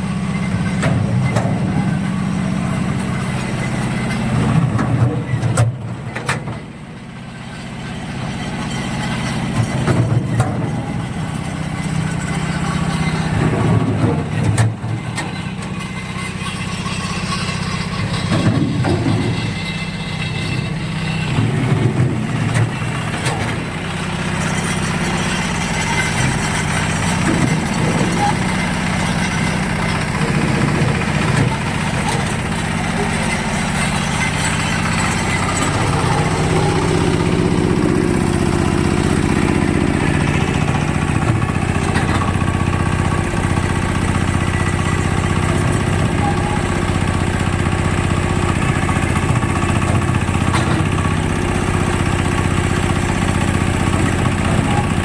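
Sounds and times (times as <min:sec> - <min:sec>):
engine idling: 0:00.0 - 0:55.0
sharp knocks and clanks: 0:00.5 - 0:02.0, 0:11.8 - 0:46.2, 0:47.0 - 0:52.6.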